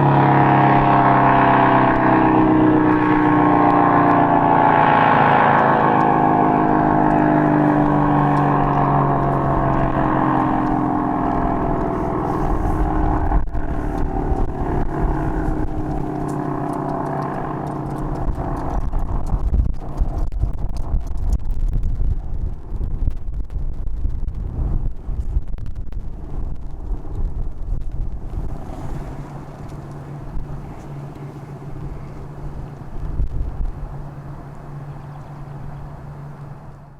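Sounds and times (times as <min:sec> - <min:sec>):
warning siren: 0:00.0 - 0:20.3
low wind rumble: 0:00.0 - 0:36.9.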